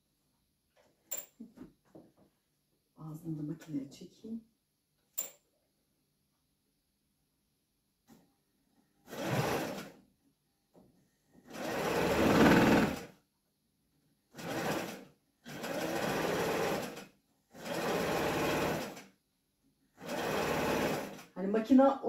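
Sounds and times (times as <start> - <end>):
electric sewing machine stitching: 9.0 - 10.0, 11.4 - 13.2, 14.3 - 19.1, 19.9 - 21.4.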